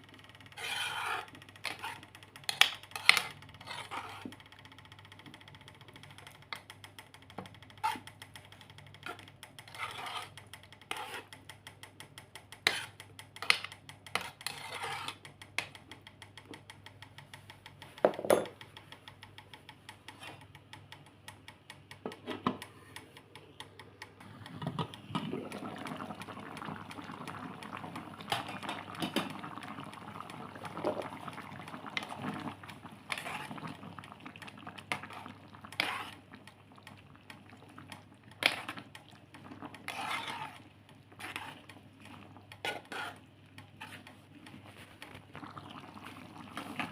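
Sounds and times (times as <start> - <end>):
utensil scraping and knocking a pot: 0.6 - 4.3, 9.0 - 11.3, 12.6 - 15.2, 18.0 - 18.6, 20.1 - 20.5, 30.6 - 31.2, 33.0 - 33.7, 34.9 - 36.2, 38.4 - 38.9, 39.6 - 45.1.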